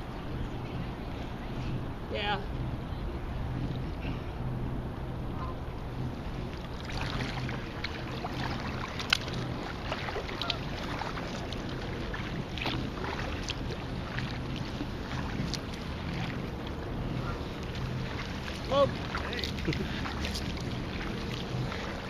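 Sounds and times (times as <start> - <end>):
steady low hum: 0.0 - 22.0
paddle splashing water: 2.9 - 22.0.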